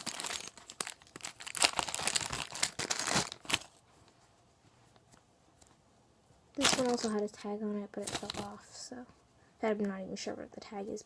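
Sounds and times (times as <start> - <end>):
plastic packaging crinkling: 0.0 - 3.8, 6.6 - 7.3, 8.0 - 8.6.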